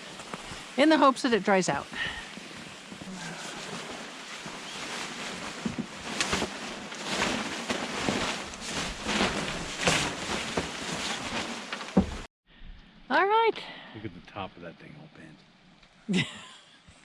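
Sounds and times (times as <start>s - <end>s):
nylon tent fabric rustling: 0.0s - 12.3s.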